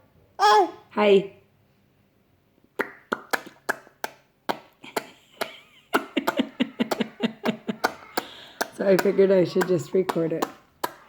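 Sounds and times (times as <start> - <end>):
baby voice: 0.4 - 0.9
baby making popping noises with mouth: 2.8 - 5.1, 6.3 - 11.0.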